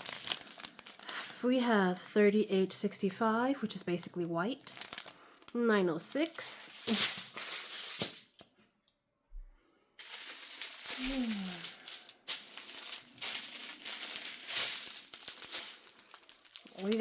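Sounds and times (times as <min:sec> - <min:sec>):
plastic bags crinkling: 0:00.0 - 0:01.5, 0:04.1 - 0:08.4, 0:10.0 - 0:17.0
person humming: 0:10.9 - 0:12.0.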